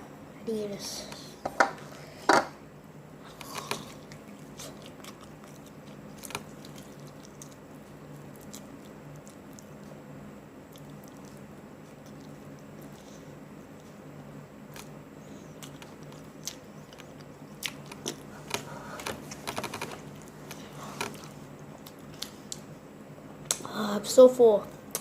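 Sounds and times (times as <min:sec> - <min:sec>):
chewing: 0:03.4 - 0:10.0, 0:10.6 - 0:14.0, 0:14.7 - 0:22.6.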